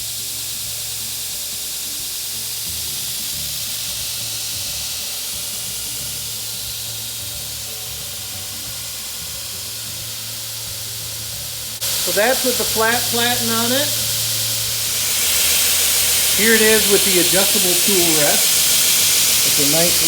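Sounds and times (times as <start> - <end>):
abrasive belt hissing: 0.0 - 20.0.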